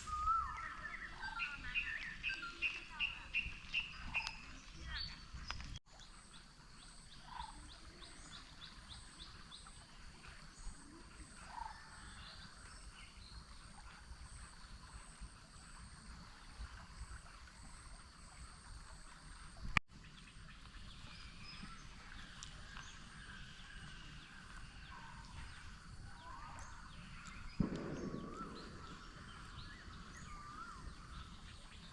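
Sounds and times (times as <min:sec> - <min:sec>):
high chirps: 0:00.0 - 0:04.5
birds calling: 0:00.0 - 0:05.8, 0:19.6 - 0:31.9
low steady hiss: 0:00.0 - 0:31.9.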